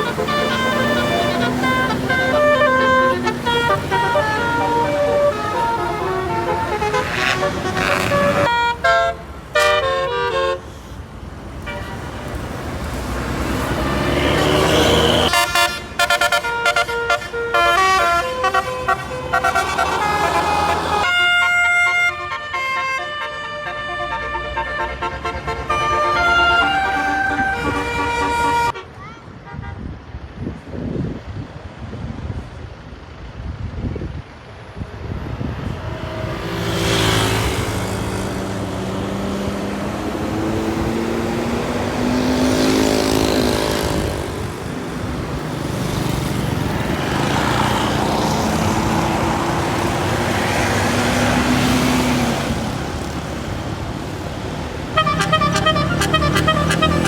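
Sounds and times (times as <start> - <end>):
musical bus air horns: 0.0 - 10.8, 11.6 - 12.3, 14.5 - 29.9, 54.5 - 57.0
bus engine: 0.0 - 57.0
traffic noise: 0.0 - 57.0.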